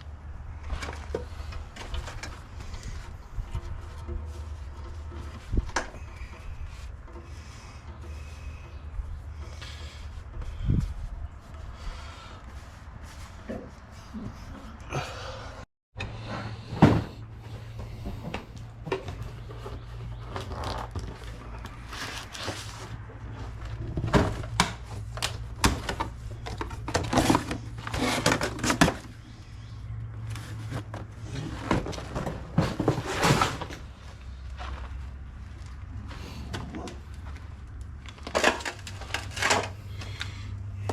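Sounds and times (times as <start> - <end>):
metal clanks and rattles: 38.0 - 40.2.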